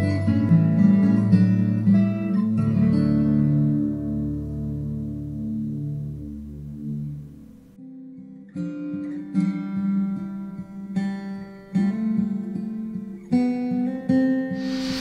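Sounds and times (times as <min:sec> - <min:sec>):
rushing noise: 0:14.6 - 0:15.0.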